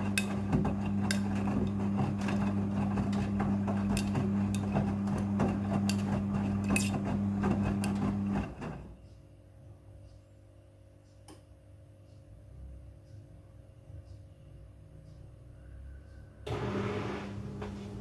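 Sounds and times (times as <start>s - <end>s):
washing machine motor hum: 0.0s - 8.9s, 16.4s - 18.0s.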